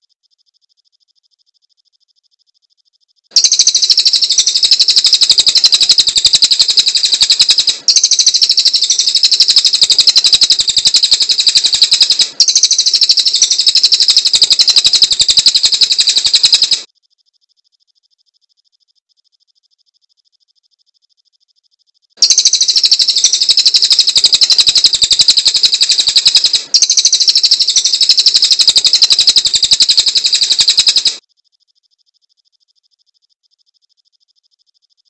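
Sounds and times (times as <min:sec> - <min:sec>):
songbird trilling: 0:03.4 - 0:16.9, 0:22.2 - 0:31.2.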